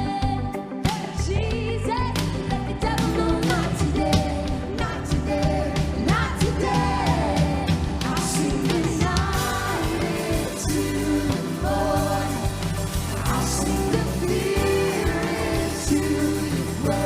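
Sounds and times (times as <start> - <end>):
live band with singer: 0.0 - 17.0.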